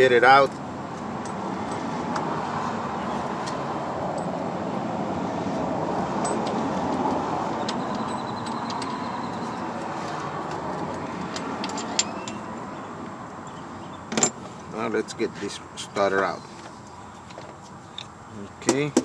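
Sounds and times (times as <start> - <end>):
repair shop background hum: 0.0 - 19.0
light metallic clicks and clinks: 1.2 - 2.4, 3.5 - 4.4, 6.2 - 12.4.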